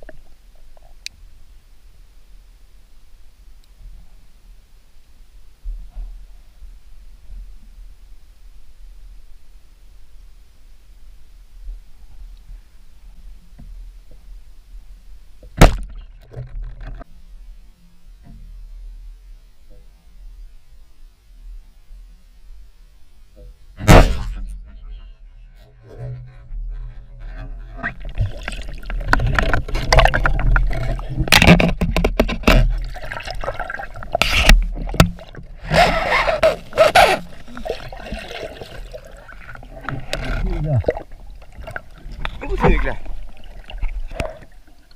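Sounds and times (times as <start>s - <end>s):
speargun firing crack: 23.8s - 24.4s
water splashing and sloshing: 27.3s - 44.9s.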